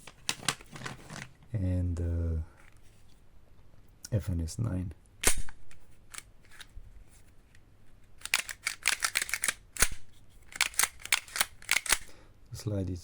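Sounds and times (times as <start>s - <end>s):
pistol clicks and rattles: 5.2s - 6.7s, 8.2s - 12.1s.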